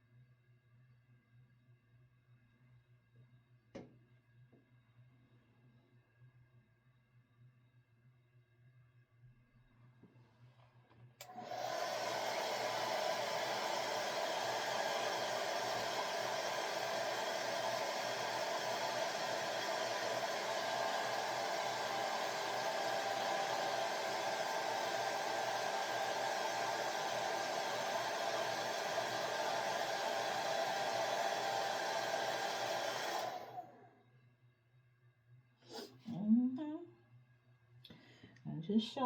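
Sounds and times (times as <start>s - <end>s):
hair dryer blowing: 11.2s - 33.8s.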